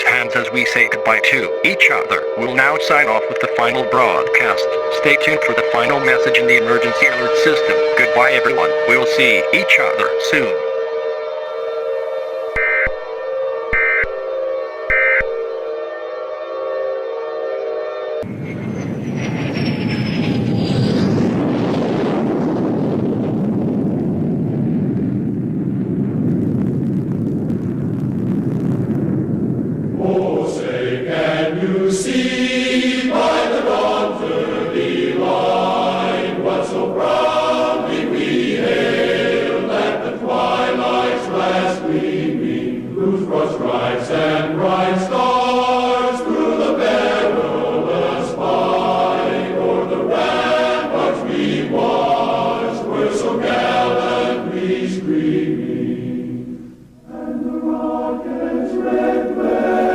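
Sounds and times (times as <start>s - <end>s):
choir singing chant-like chords: 0.0s - 12.6s, 29.9s - 59.9s
low rumbling noise: 18.2s - 31.9s.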